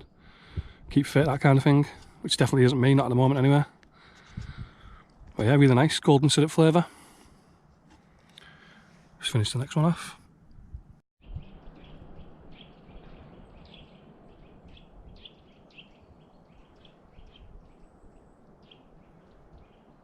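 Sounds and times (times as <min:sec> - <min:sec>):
songbird chirping: 0:11.2 - 0:20.0.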